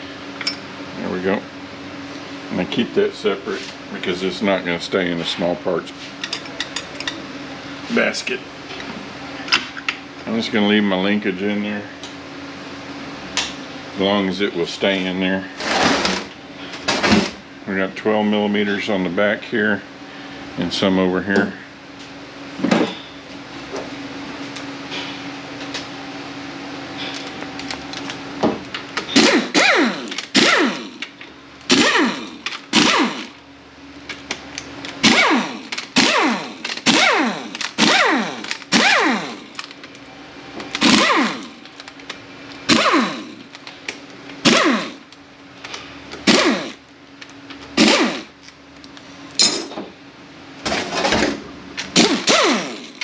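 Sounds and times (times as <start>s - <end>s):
steady hum: 0.0s - 53.0s
power ratchet spinning: 29.1s - 33.4s, 34.9s - 39.8s, 40.7s - 41.9s, 42.6s - 43.7s, 44.4s - 45.2s, 46.2s - 46.8s, 47.7s - 48.5s, 51.9s - 53.0s.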